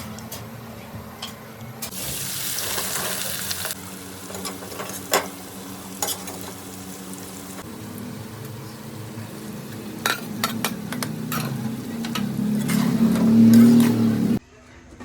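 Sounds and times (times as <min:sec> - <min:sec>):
food frying in hot oil: 0:01.9 - 0:09.0.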